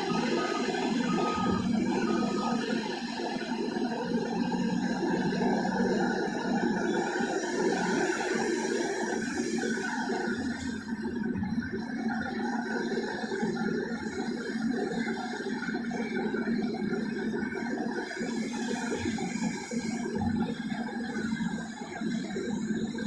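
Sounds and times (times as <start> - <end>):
excavator diesel engine running: 0.0 - 12.2.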